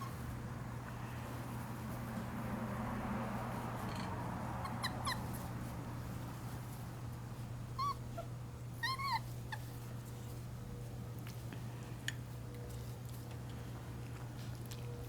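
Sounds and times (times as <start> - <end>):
puppy whimpering squeaks: 0.0 - 0.2, 3.9 - 5.4, 7.8 - 9.7.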